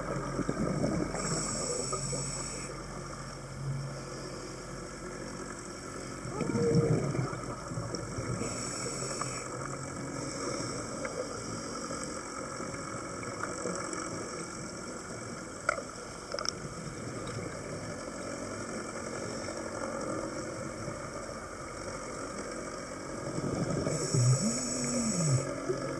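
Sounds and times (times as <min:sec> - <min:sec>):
motor drone: 0:01.1 - 0:05.3, 0:08.2 - 0:09.6, 0:23.8 - 0:25.9.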